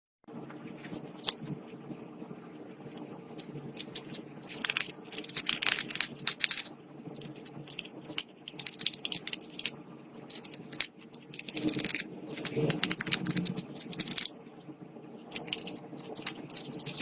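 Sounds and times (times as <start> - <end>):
steady low hum: 0.3 - 17.0.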